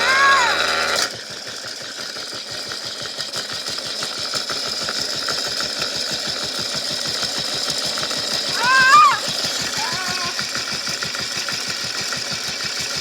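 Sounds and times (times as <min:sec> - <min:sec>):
small electric motor whining: 0:00.0 - 0:01.1.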